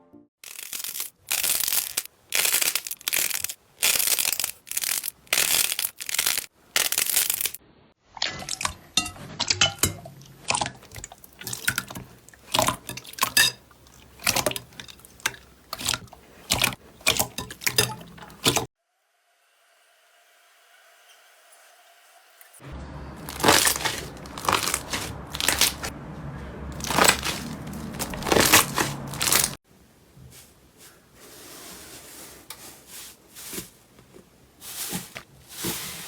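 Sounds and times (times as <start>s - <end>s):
slime squelching: 0.4s - 7.6s, 10.4s - 18.7s, 23.2s - 26.0s, 26.7s - 29.6s
sticky crackles and pops: 0.4s - 7.6s, 23.2s - 25.9s, 26.8s - 29.6s.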